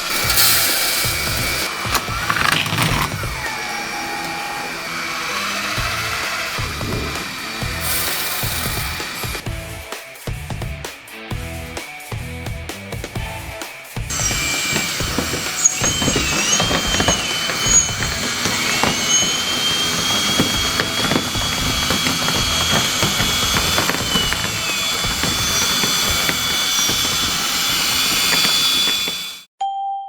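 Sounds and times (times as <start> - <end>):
hydraulic pump whining: 0.0 - 9.8, 14.1 - 29.5
clicks and clatters: 0.2 - 3.4, 14.1 - 29.5.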